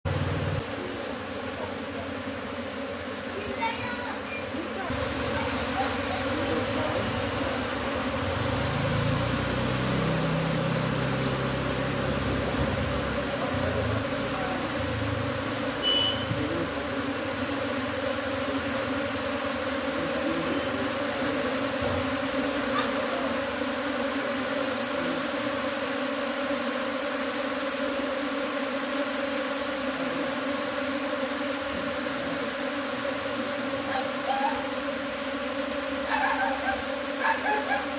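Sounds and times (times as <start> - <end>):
swarm of bees buzzing: 0.1 - 37.9.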